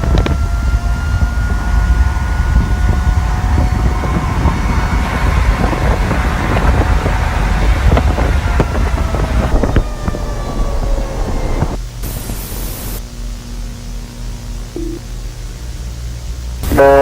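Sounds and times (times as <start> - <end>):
thin siren-like tones: 0.0 - 11.8, 14.8 - 15.0
loud rumbling wind: 0.0 - 13.0.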